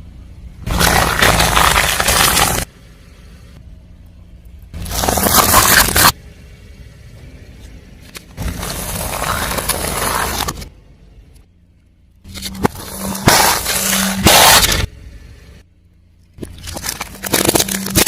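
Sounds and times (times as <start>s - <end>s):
car tyre crushing crunchy objects: 0.6s - 3.6s, 4.5s - 6.3s, 7.0s - 11.2s, 12.2s - 15.6s, 16.3s - 18.0s.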